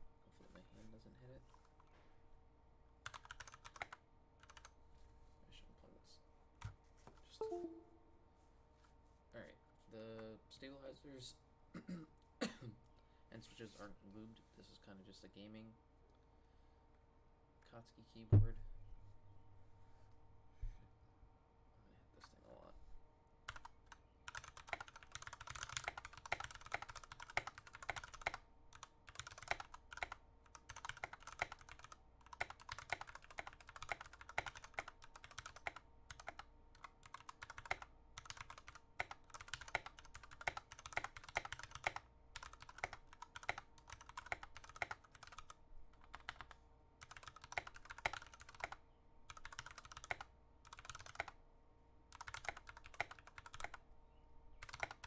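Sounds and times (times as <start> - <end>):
mechanical keyboard typing: 3.0 - 4.7, 23.5 - 51.4, 52.1 - 53.8, 54.6 - 55.0.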